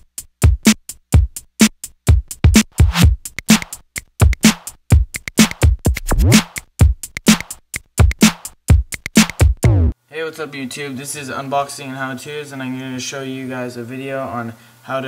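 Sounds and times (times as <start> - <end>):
electronic music with drum-machine beat: 0.0 - 10.0.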